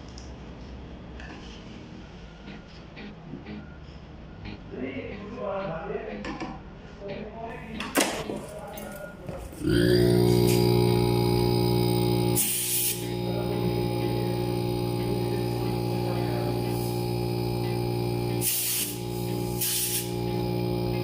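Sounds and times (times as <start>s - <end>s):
electric machine hum: 9.4s - 21.0s
gas hissing: 9.4s - 21.0s.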